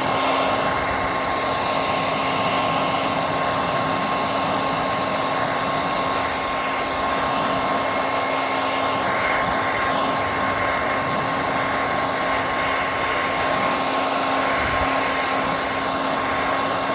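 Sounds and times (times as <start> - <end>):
blow dryer running: 0.0 - 16.9.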